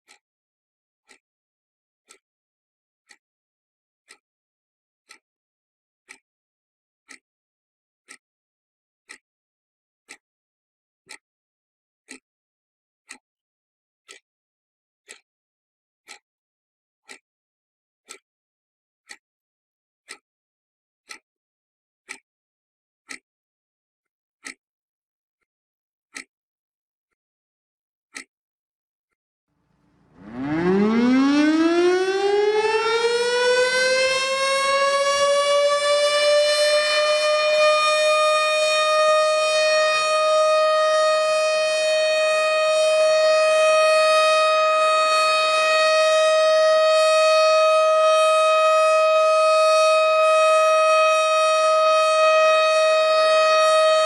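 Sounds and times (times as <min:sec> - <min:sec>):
civil defence siren: 0:30.0 - 0:54.0.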